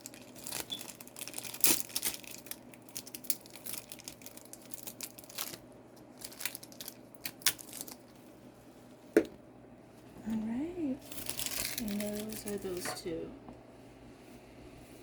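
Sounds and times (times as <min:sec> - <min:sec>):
plastic wrapping crinkling and tearing: 0:00.0 - 0:08.3, 0:11.0 - 0:12.8.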